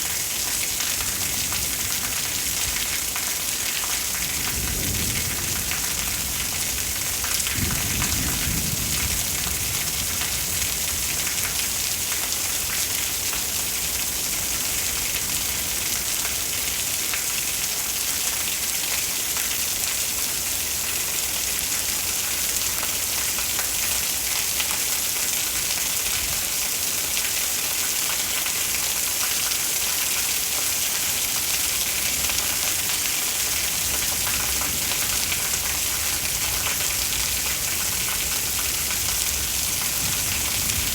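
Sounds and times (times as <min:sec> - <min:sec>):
steady rain: 0:00.0 - 0:40.9
low thunder rumble: 0:04.3 - 0:10.8, 0:34.0 - 0:40.9.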